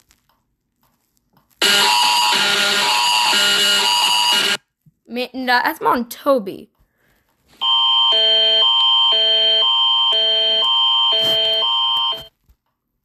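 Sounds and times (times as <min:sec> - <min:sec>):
emergency alert attention signal: 0:01.6 - 0:04.6, 0:07.6 - 0:12.3.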